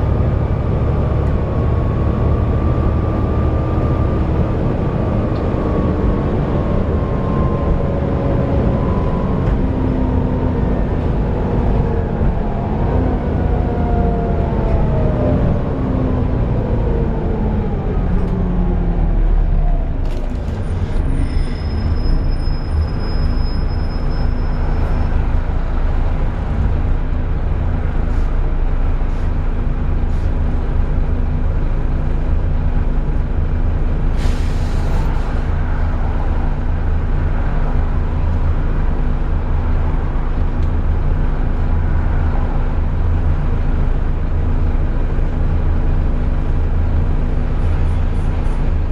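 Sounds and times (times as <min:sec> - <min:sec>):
bus engine drone: 0:00.0 - 0:48.9.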